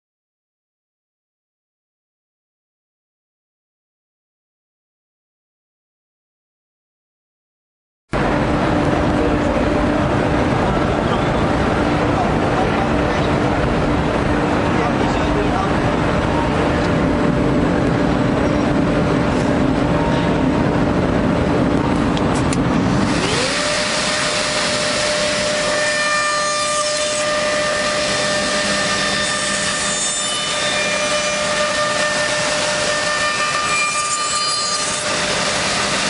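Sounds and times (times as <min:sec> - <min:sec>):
machine motor hum: 0:08.2 - 0:36.0
motor spinning up with whine: 0:08.2 - 0:36.0.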